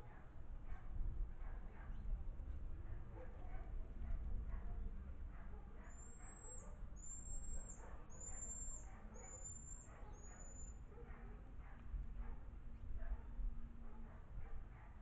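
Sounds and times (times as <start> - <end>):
high thin whistled calls: 6.0 - 10.8.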